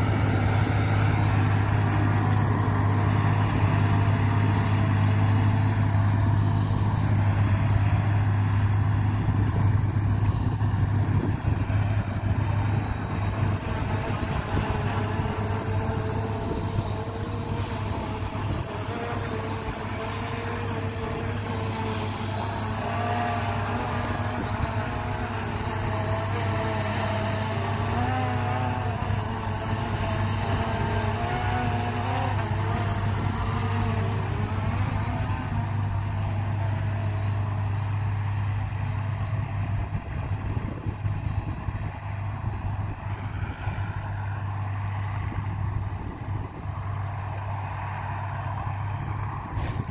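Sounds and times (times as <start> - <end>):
diesel engine humming: 0.0 - 49.9.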